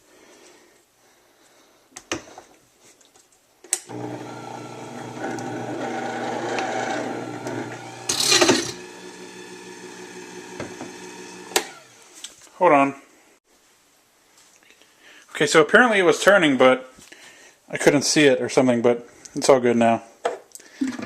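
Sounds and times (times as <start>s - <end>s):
blender motor running: 3.9s - 12.0s.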